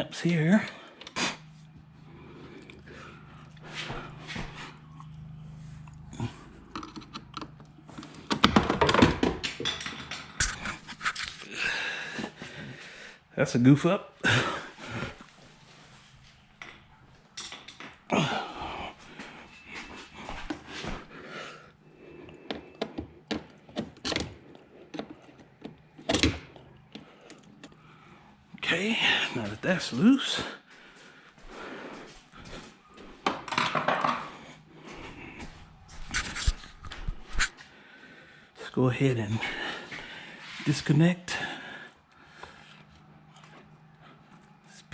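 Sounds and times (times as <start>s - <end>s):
hand tools clicking on plastic parts: 6.7s - 11.4s, 22.3s - 27.8s.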